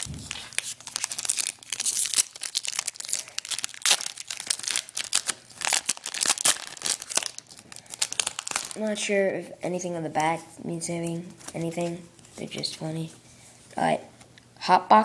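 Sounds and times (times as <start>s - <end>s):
wrapper being torn and crinkled: 0.0s - 8.9s.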